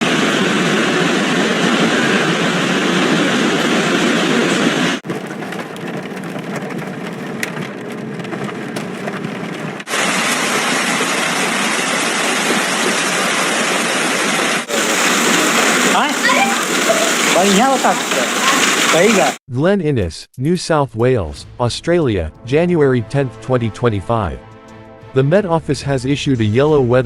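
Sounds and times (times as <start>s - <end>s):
hailstones cracking sharply: 0.0s - 19.4s
hail pounding on hard surfaces: 3.5s - 19.4s.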